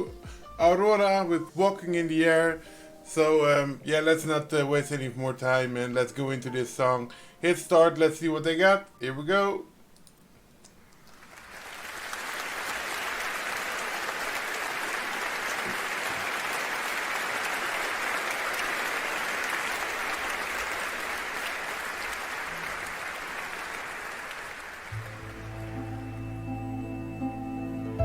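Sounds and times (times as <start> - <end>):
audience applauding: 11.1 - 26.5.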